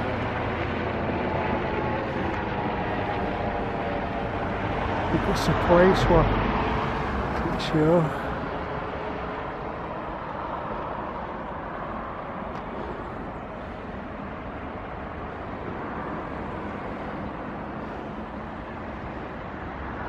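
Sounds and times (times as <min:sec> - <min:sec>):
distant road traffic hum: 0:00.0 - 0:20.0.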